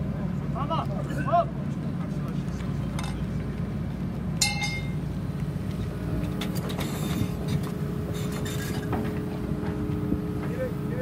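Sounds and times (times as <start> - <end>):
diesel machinery rumbling: 0.0 - 11.0
sharp metallic clank: 4.4 - 5.0.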